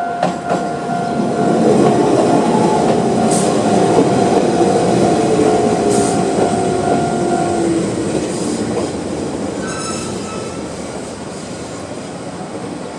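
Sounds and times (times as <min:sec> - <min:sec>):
electric train running on rails: 0:00.0 - 0:12.9
wheel squeals: 0:09.6 - 0:10.6.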